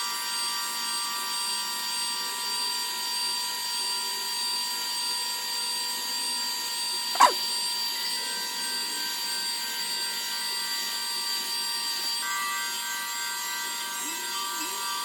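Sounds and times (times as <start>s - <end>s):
sharp click: 7.2s - 7.4s.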